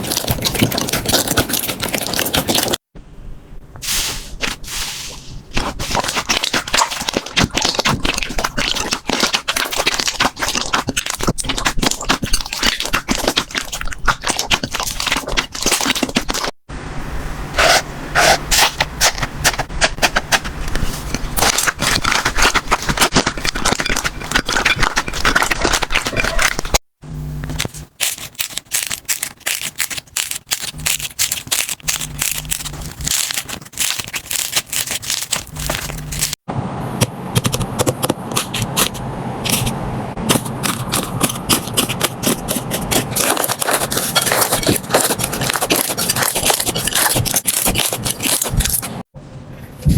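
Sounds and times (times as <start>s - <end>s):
slime crackling and popping: 27.5s - 36.4s.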